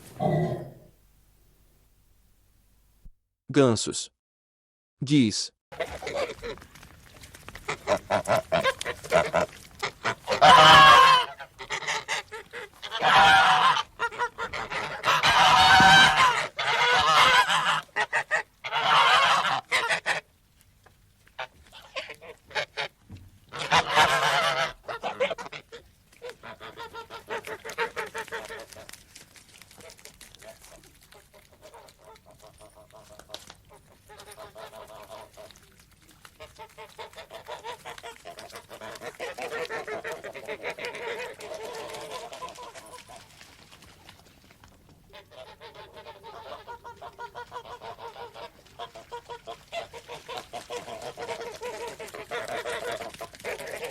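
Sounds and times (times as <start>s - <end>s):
geese honking: 7.7s - 20.2s, 23.5s - 29.0s, 36.4s - 43.3s, 45.1s - 53.9s.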